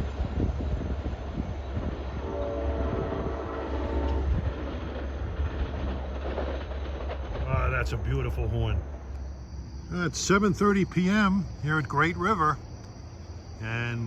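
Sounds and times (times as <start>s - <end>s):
train rumbling past: 0.0s - 14.0s
train air horn blast: 2.2s - 4.5s.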